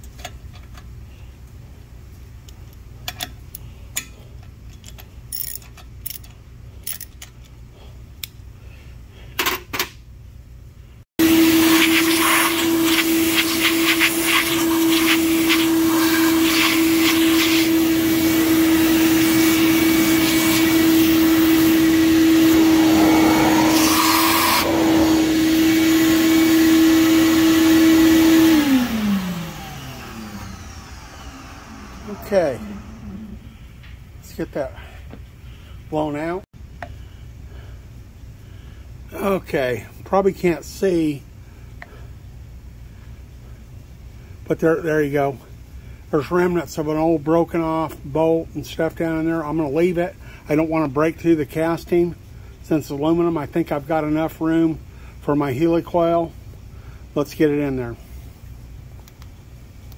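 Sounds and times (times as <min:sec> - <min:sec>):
vacuum motor running: 0:11.2 - 0:33.5.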